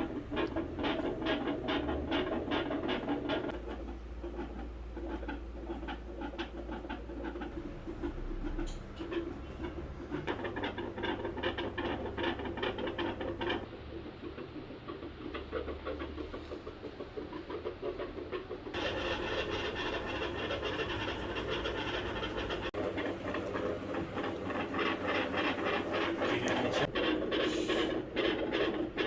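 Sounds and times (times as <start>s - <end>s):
stethoscope rubbing on fur: 13.6s - 28.8s.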